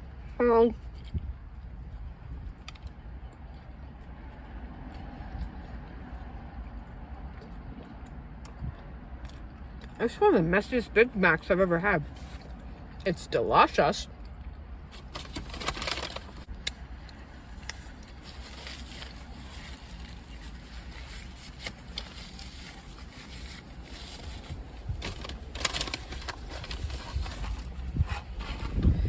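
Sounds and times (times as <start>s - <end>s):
steady low rumble: 13.8s - 29.0s
paper wrapper crinkling: 14.9s - 16.5s, 18.1s - 28.8s.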